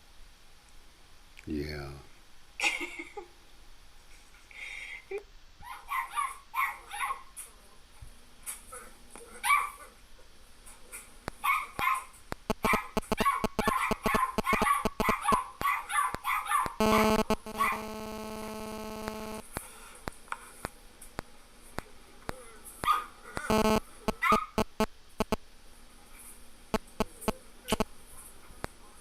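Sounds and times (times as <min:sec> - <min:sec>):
sharp clicks: 0:12.3 - 0:15.4, 0:16.7 - 0:19.5, 0:23.4 - 0:25.4, 0:26.8 - 0:27.8
steady pitched tone: 0:12.4 - 0:15.1, 0:16.8 - 0:19.4, 0:23.5 - 0:25.4
puppies yipping and barking: 0:12.6 - 0:16.8.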